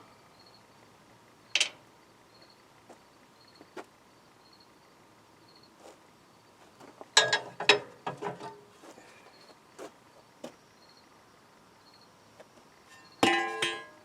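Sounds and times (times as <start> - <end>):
metal tools clanking: 1.6 - 1.8, 7.2 - 8.6, 12.9 - 14.0.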